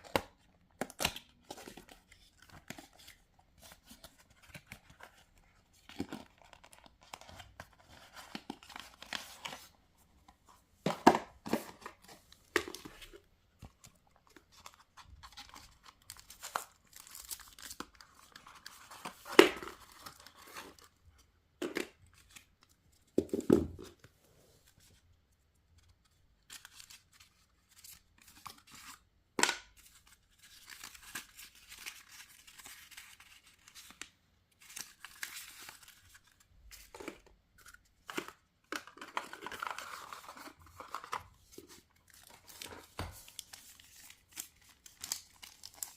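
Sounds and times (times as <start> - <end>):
packaging tearing and crinkling: 42.5 - 45.9.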